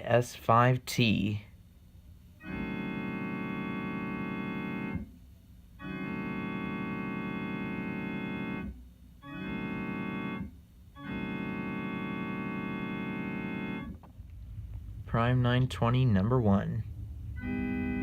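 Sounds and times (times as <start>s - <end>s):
electronic keyboard horn chord: 2.4s - 5.1s, 5.8s - 14.0s, 17.2s - 18.0s.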